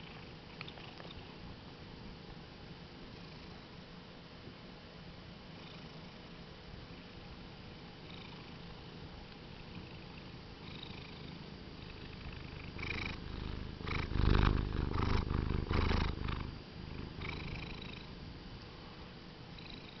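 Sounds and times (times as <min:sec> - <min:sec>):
cat purring: 0:08.0 - 0:08.7, 0:09.5 - 0:18.2, 0:19.6 - 0:20.0.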